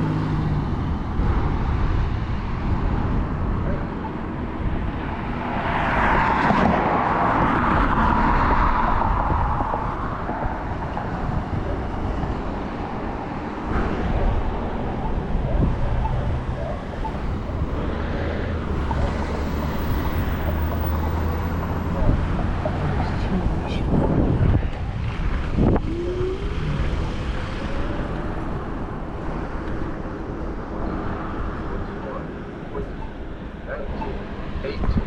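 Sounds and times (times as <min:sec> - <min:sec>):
road noise: 0:00.0 - 0:35.0
wind buffeting microphone: 0:06.3 - 0:33.7.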